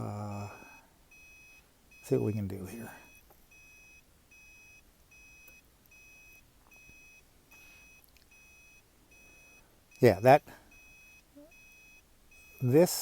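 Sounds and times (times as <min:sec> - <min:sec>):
faint electronic beeping: 0:00.0 - 0:13.0
faint ticks: 0:05.4 - 0:06.0.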